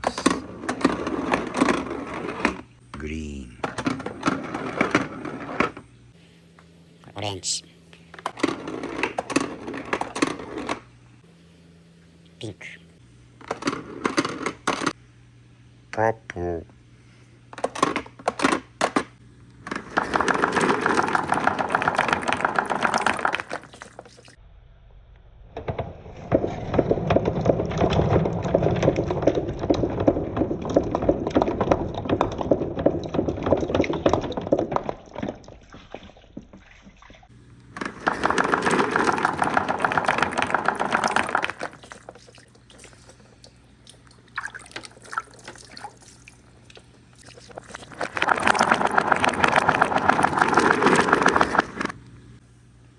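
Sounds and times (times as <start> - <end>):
marbles rattling down wooden run: 19.7 - 24.4, 37.8 - 43.2, 47.2 - 52.0.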